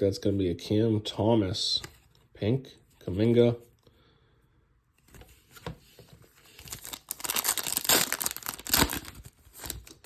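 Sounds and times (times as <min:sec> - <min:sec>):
plastic foil wrapper crinkling: 0:06.5 - 0:10.0.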